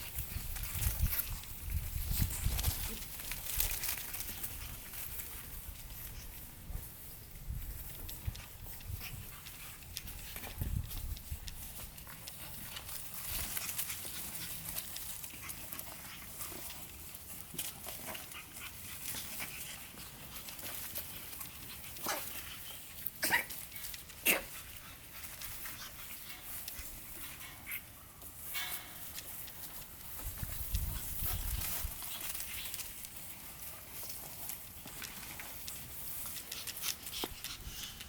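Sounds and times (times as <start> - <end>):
puppies making small noises: 7.9 - 28.5.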